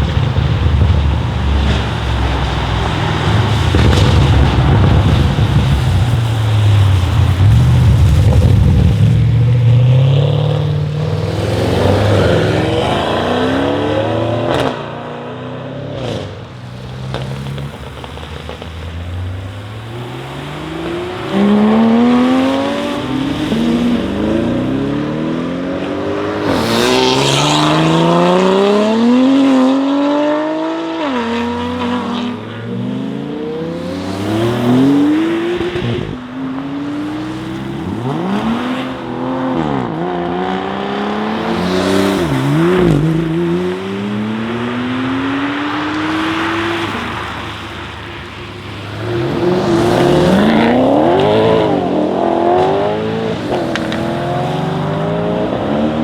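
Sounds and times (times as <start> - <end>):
car engine accelerating hard: 0.0 - 56.0.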